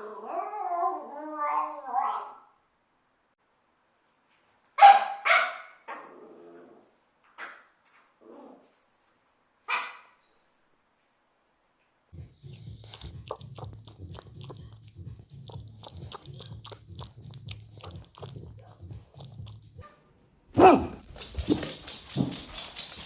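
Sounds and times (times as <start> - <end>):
dog barking: 4.8 - 6.0, 9.7 - 10.2, 19.8 - 22.4
dog chewing: 12.2 - 19.8, 20.6 - 23.0
dog vocalizing: 12.2 - 19.8, 20.6 - 23.0.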